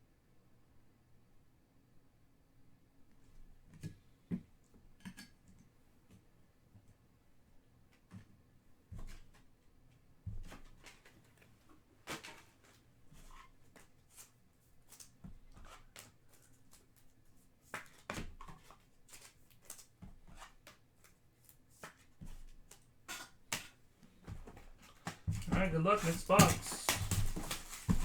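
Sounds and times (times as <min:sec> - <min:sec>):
trading cards rustling and clicking: 0:25.5 - 0:28.0.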